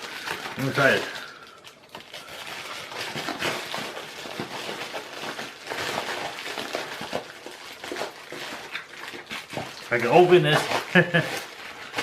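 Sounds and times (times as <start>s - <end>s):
cardboard and paper rustling: 0.0s - 12.0s.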